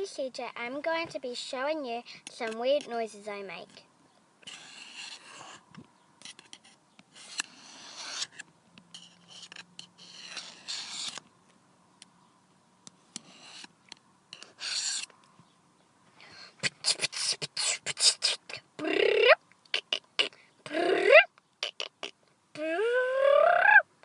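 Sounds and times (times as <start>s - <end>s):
person making mouth noises: 16.6s - 23.9s.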